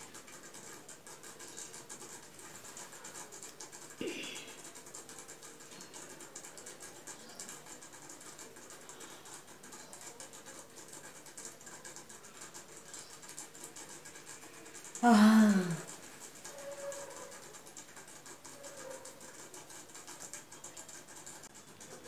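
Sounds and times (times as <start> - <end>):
woman yawning: 15.0 - 15.9.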